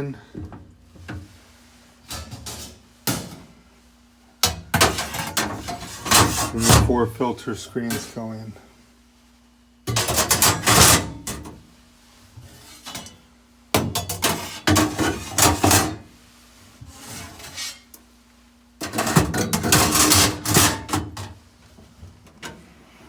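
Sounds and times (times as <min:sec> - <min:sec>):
filter screens clattering and scraping: 0:18.8 - 0:21.3.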